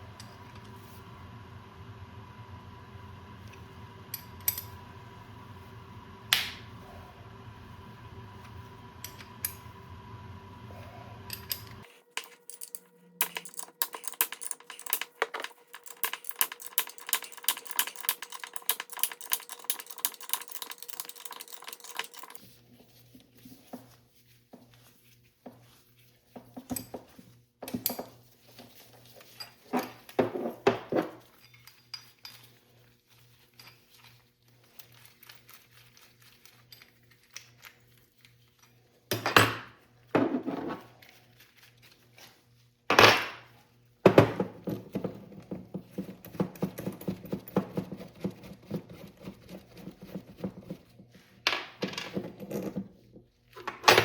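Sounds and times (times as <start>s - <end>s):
metal tools clinking and clicking: 11.3s - 22.4s, 31.3s - 32.6s.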